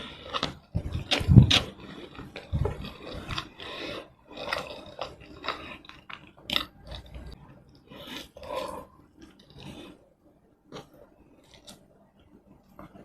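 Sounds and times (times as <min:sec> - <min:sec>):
wet chewing: 0:00.0 - 0:10.0.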